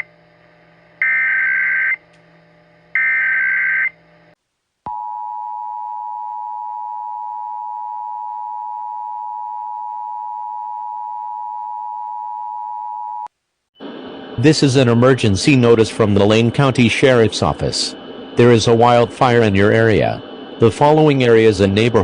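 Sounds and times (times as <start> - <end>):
data bursts: 14.4 - 22.0.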